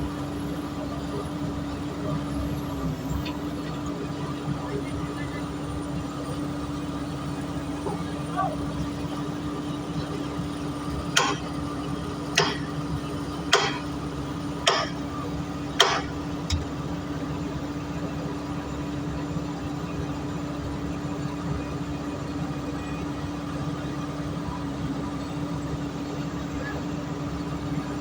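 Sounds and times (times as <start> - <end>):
excavator diesel engine idling: 0.0 - 28.0
sharp knocks: 11.2 - 11.4, 13.5 - 13.9, 14.7 - 15.0, 15.8 - 16.6.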